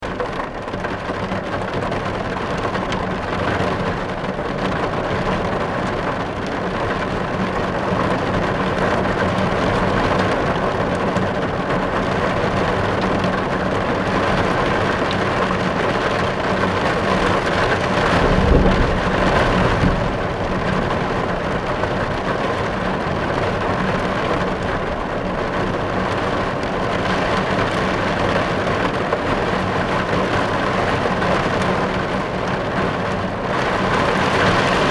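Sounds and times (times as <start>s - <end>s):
low rumble of thunder: 12.9s - 32.4s
heavy rain hissing: 15.8s - 28.3s.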